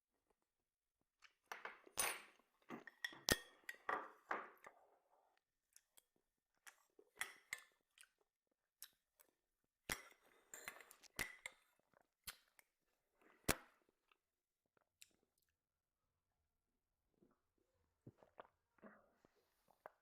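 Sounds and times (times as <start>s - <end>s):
person chewing: 5.7s - 13.8s.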